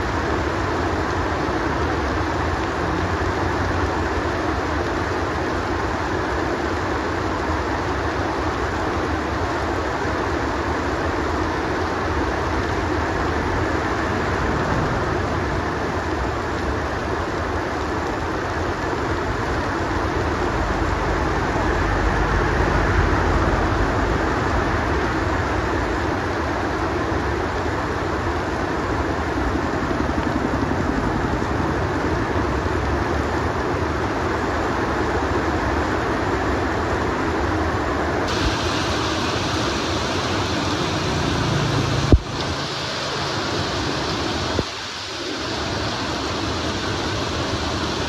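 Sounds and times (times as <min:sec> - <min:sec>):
heavy rain hissing: 0:00.0 - 0:30.0, 0:32.0 - 0:48.0
low rumble: 0:13.0 - 0:17.1.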